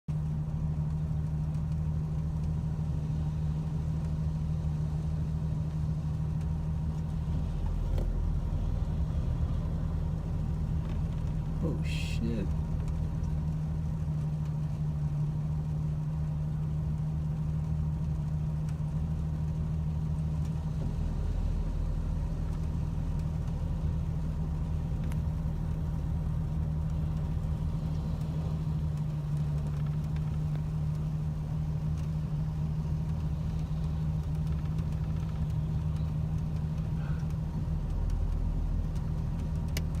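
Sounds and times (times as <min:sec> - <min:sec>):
car engine running steadily: 0:00.0 - 0:40.0.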